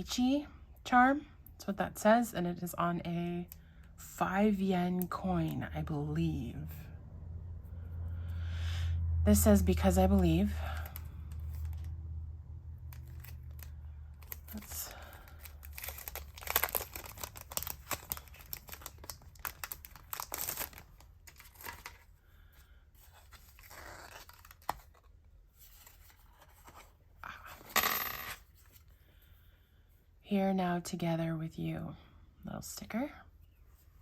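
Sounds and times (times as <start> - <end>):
paper rustling and crinkling: 12.9 - 22.2, 23.0 - 27.0.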